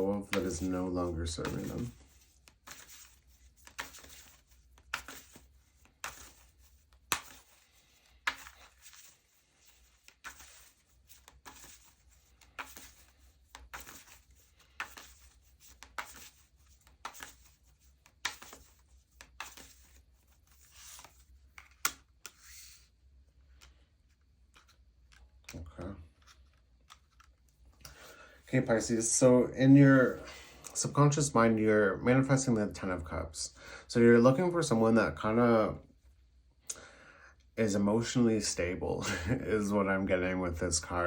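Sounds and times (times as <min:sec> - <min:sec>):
cards snapping and rustling: 0:01.3 - 0:22.8, 0:23.5 - 0:28.0.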